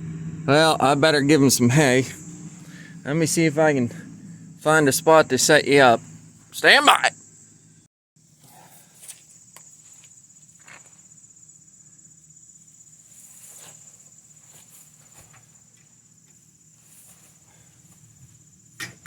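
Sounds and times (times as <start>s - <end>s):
low hum: 0.0s - 7.9s
high-pitched insect trill: 1.6s - 18.8s.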